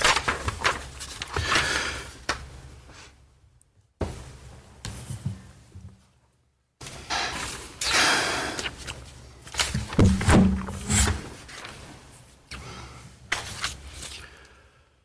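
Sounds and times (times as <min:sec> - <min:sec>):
rustling handling noise: 0:00.0 - 0:01.7, 0:08.7 - 0:12.5, 0:13.3 - 0:14.2
knocks and thuds: 0:09.8 - 0:11.0.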